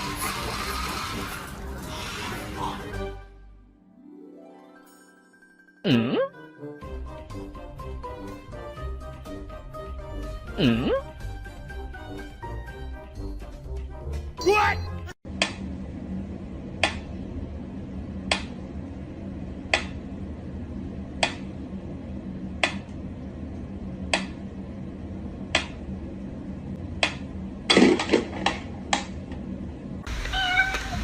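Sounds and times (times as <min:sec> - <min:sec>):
low hum: 0:15.3 - 0:30.1.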